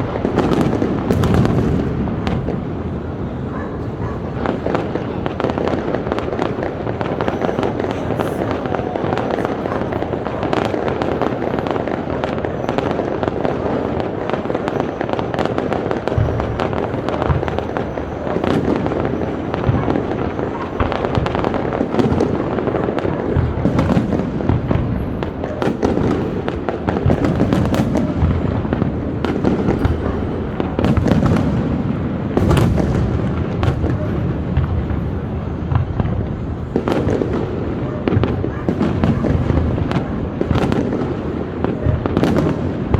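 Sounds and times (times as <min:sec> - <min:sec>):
deep fireworks booms: 0:00.0 - 0:42.9
fireworks crackling and bangs: 0:00.0 - 0:42.9.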